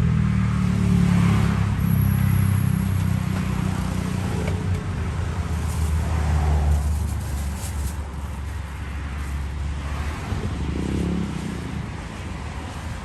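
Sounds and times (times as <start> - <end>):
street traffic: 0.0 - 13.0
vehicle engine droning: 0.5 - 11.9.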